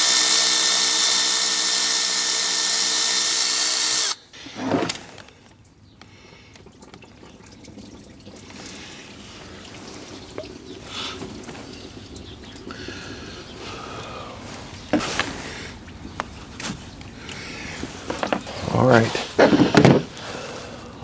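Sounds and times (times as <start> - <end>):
electric ratchet motor running: 0.0 - 4.2
faint handling sounds: 14.4 - 20.8.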